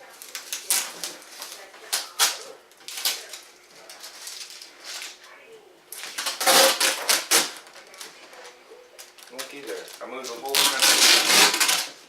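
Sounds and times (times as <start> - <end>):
adhesive tape ripping off plastic: 0.2 - 3.4, 6.0 - 7.8, 10.4 - 12.0.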